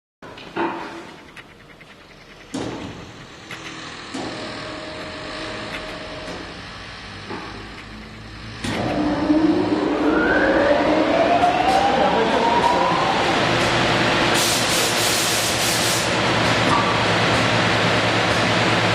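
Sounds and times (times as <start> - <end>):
machine motor whine spinning up: 1.3 - 14.5.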